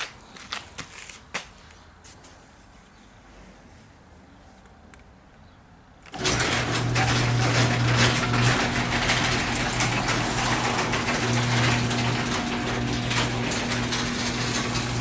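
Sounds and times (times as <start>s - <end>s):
garage door opener running: 6.1s - 15.0s
mechanical rattle: 6.1s - 15.0s.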